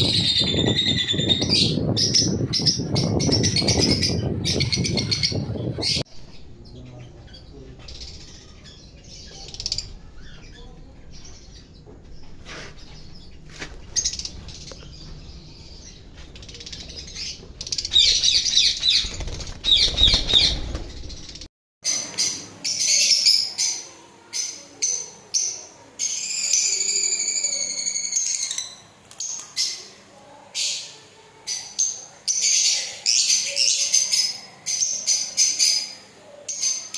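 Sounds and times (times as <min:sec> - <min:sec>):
parrots calling and chirping: 0:00.0 - 0:21.4
wings flapping: 0:16.0 - 0:21.5.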